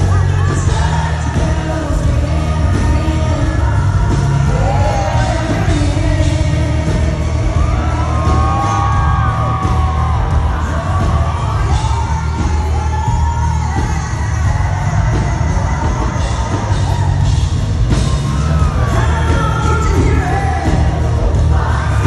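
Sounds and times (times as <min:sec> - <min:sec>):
woman singing: 0:00.0 - 0:17.3
crowd cheering: 0:00.0 - 0:22.0
live band playing country song: 0:00.0 - 0:22.0.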